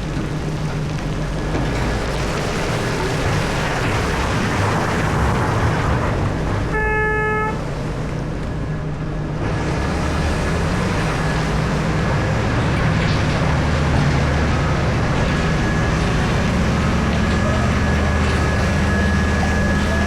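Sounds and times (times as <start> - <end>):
heavy mining machinery running: 0.0 - 20.0
horn blast: 6.6 - 7.8.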